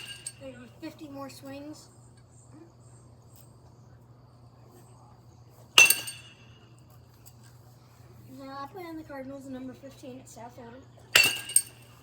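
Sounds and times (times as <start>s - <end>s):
baseball bat striking ball: 5.8s - 6.5s, 11.2s - 11.9s.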